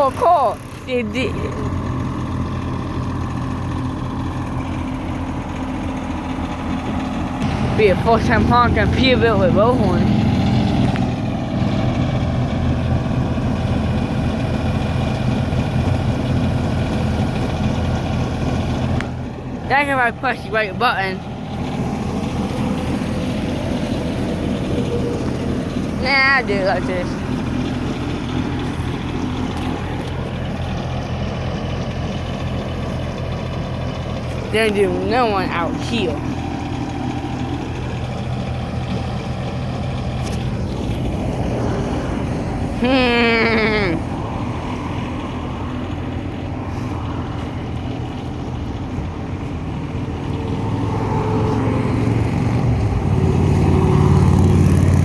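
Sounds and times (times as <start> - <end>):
road traffic: 0.0 - 55.0
truck engine idling: 0.0 - 55.0.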